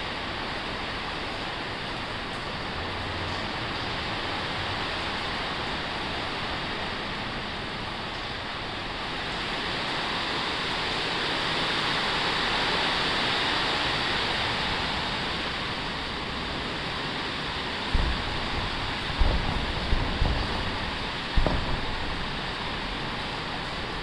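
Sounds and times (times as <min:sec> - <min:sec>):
heavy rain on a tin roof: 0:00.0 - 0:24.0
low thumps: 0:17.9 - 0:24.0.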